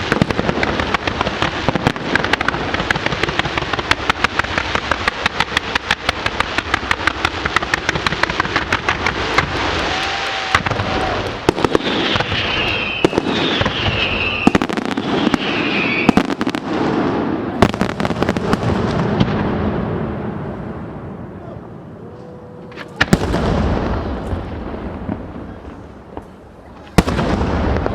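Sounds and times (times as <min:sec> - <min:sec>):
fireworks whistling: 0:00.0 - 0:18.6
fireworks banging: 0:00.0 - 0:21.3, 0:22.6 - 0:27.9.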